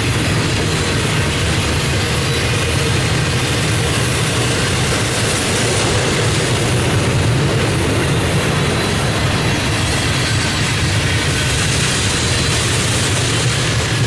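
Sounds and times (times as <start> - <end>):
train rumbling on rails: 0.0 - 14.0.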